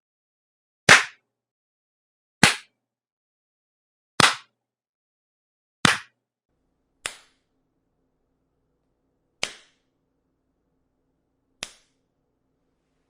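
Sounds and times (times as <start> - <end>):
sharp slaps: 0.9 - 1.2, 2.4 - 2.8, 4.2 - 4.6, 5.8 - 6.2, 7.0 - 7.5, 9.4 - 9.8, 11.6 - 12.0.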